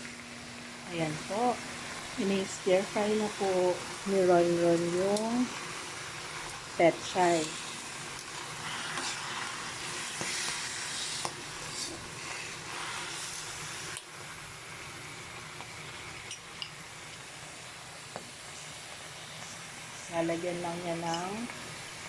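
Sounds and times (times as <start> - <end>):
greens sizzling in a pan: 0.0 - 22.0.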